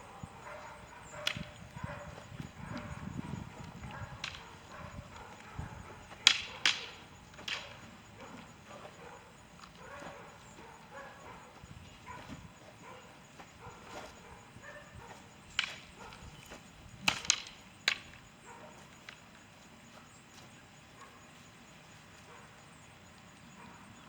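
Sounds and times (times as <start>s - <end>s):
practice weapons clacking: 6.1s - 8.0s, 17.1s - 18.2s.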